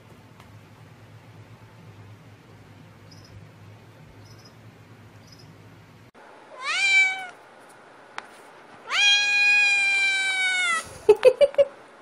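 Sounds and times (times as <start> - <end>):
faint hum: 0.0 - 12.0
soft high chirps: 4.2 - 4.6
cat meowing: 6.5 - 7.4, 8.8 - 10.8.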